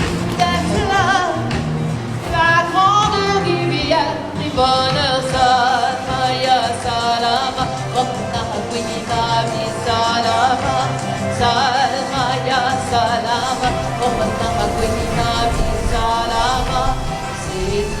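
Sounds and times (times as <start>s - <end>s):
backing band with bass line: 0.0s - 18.0s
person singing with vibrato: 0.0s - 18.0s.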